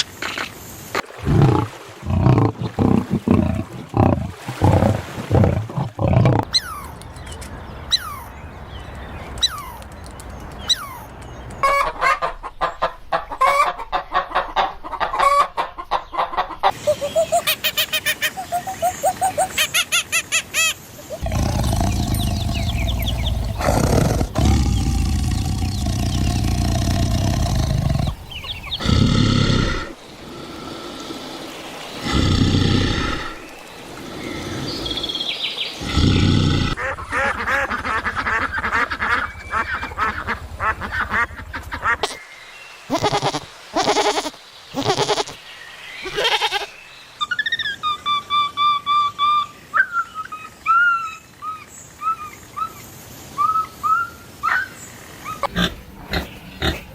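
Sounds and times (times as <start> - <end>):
loud low rumbling noise: 21.2 - 29.1
chirping: 21.2 - 30.4, 55.4 - 56.9
animal cries: 42.9 - 45.4, 46.0 - 46.7.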